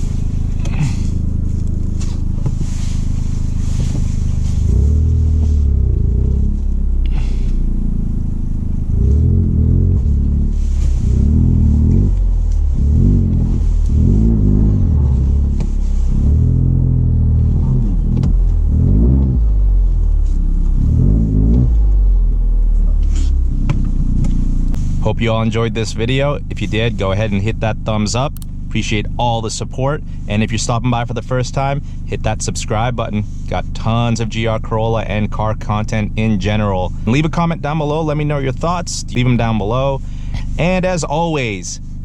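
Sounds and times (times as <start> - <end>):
car engine revving: 0.0 - 24.8, 39.0 - 39.8.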